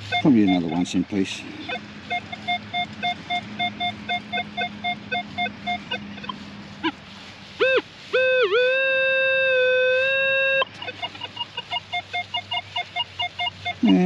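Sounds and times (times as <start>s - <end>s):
metal detector beeping: 0.0s - 7.0s, 7.6s - 14.0s
metal detector long steady tone: 0.0s - 14.0s.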